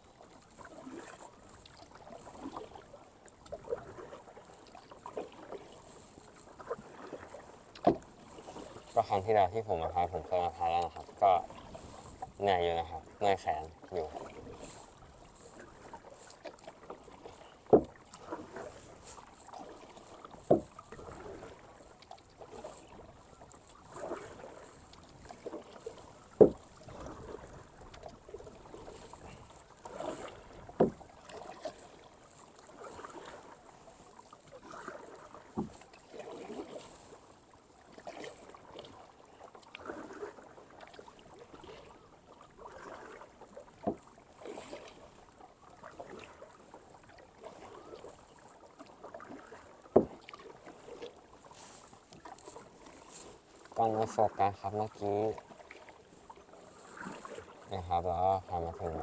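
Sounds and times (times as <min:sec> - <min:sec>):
kayak paddle swishing through water: 0:00.0 - 0:59.0
sharp knocks: 0:26.4 - 0:26.6.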